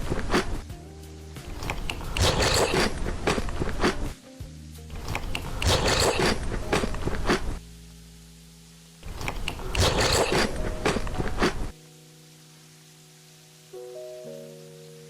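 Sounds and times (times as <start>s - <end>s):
soft background music: 0.0s - 15.0s
crunchy chewing of cereal: 1.6s - 4.1s, 5.0s - 7.6s, 9.2s - 11.6s.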